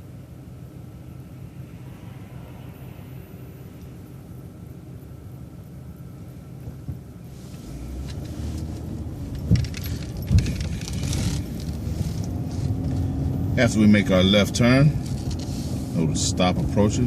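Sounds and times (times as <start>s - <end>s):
bus engine: 0.0s - 17.0s
road noise: 0.0s - 17.0s
interior rattling: 6.6s - 13.4s.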